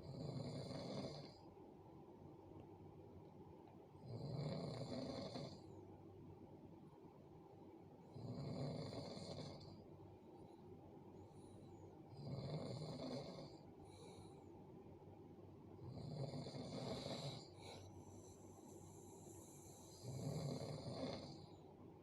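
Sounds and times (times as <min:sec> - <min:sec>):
person snoring heavily: 0:15.9 - 0:17.5, 0:19.1 - 0:21.4.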